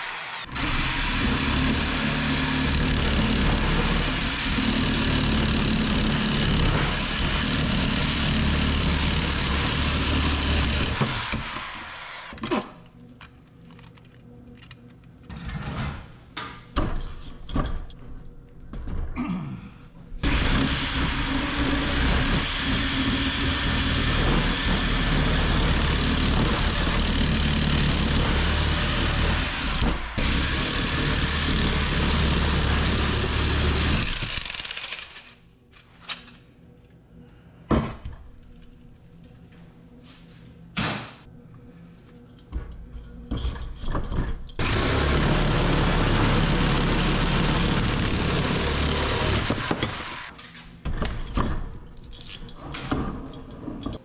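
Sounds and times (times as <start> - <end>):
power tool whining: 0.0 - 12.5, 20.2 - 35.0, 44.6 - 50.3.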